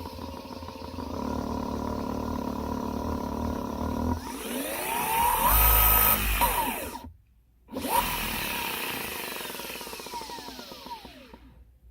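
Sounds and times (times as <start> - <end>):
electric motors whining: 4.1 - 7.1, 7.7 - 11.5.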